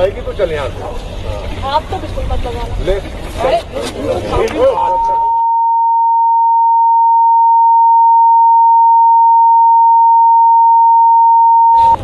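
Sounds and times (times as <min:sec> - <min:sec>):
censor bleep tone: 0:05.2 - 0:12.0.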